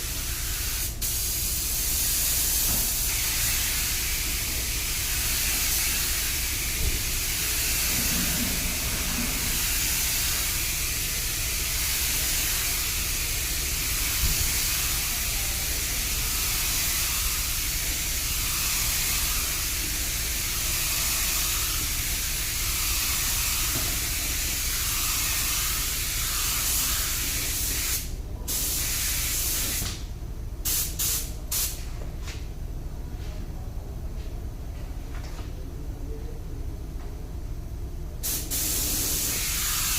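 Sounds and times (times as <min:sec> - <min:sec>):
spray gun hissing: 0:00.0 - 0:29.7, 0:38.2 - 0:39.9.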